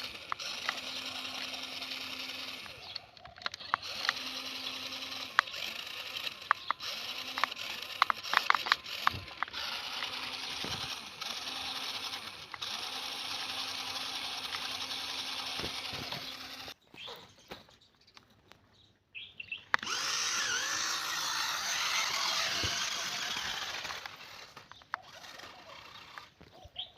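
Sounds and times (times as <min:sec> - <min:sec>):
clicks: 0:00.0 - 0:01.6, 0:02.5 - 0:11.0, 0:19.6 - 0:26.6
toy car electric motor whining: 0:00.0 - 0:16.8, 0:19.7 - 0:26.9.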